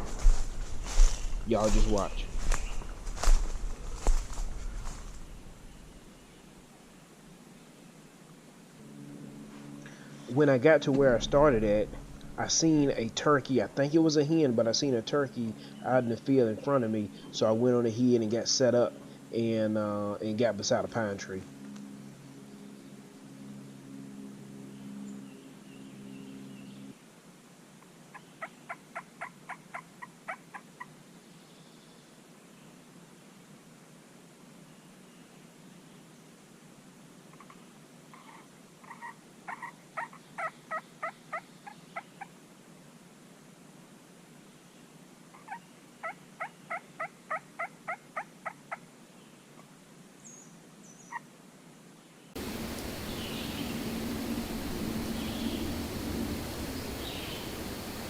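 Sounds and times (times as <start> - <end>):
low steady hum: 0.0 - 27.0, 52.4 - 58.0
turkey yelping: 28.4 - 30.7, 38.2 - 41.4, 45.4 - 48.6.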